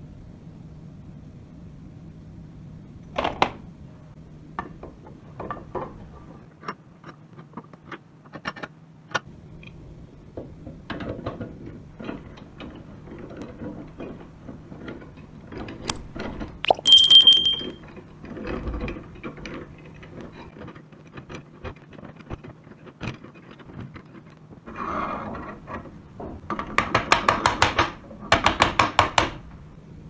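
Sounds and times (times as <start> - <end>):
low steady hum: 15.8 - 17.8.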